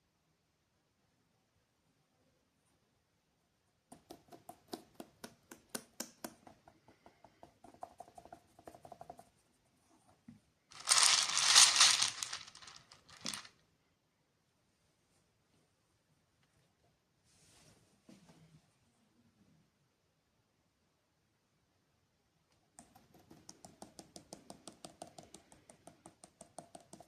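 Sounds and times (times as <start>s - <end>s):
plastic wrapper crinkling: 10.7s - 13.5s.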